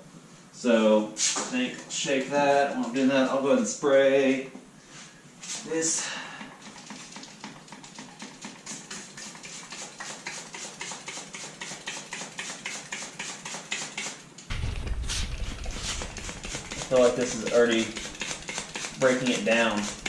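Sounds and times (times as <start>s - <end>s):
aerosol can rattling: 6.6s - 13.5s, 14.5s - 20.0s
low rumble: 14.5s - 18.0s.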